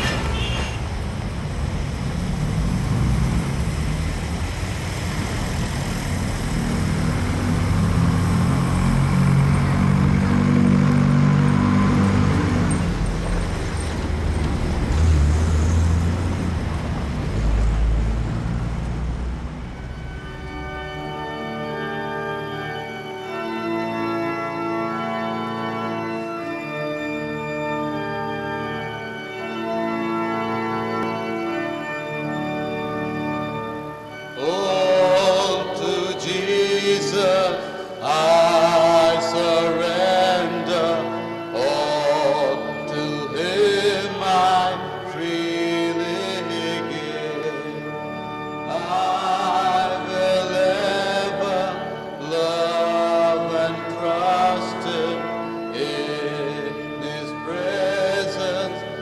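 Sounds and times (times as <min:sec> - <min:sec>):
drone of held chords: 0:00.3 - 0:59.0
solo voice singing a chant: 0:34.4 - 0:47.8, 0:48.7 - 0:59.0.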